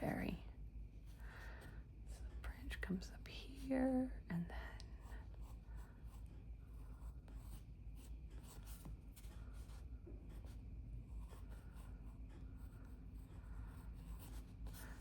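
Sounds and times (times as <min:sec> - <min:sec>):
pencil scratching on paper: 0:05.0 - 0:15.0.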